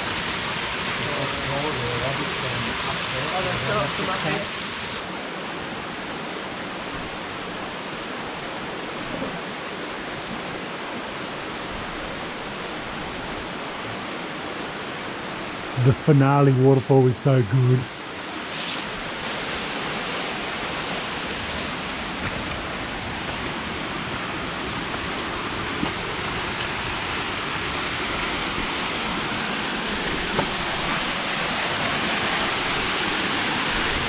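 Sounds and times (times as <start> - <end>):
waterfall pouring: 19.0 - 34.0.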